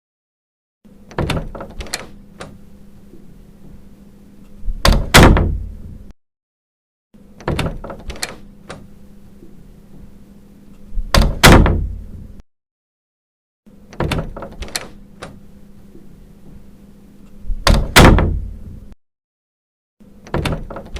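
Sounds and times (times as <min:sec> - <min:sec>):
faint steady hum: 0:00.9 - 0:06.1, 0:07.2 - 0:12.4, 0:13.7 - 0:19.0
door closing thud: 0:01.1 - 0:02.6, 0:04.6 - 0:06.0, 0:07.4 - 0:08.9, 0:11.0 - 0:12.3, 0:13.9 - 0:15.4, 0:17.5 - 0:18.8, 0:20.2 - 0:20.9
door handle and latch clicks: 0:01.1 - 0:02.6, 0:07.4 - 0:08.9, 0:13.9 - 0:15.4, 0:20.2 - 0:20.9.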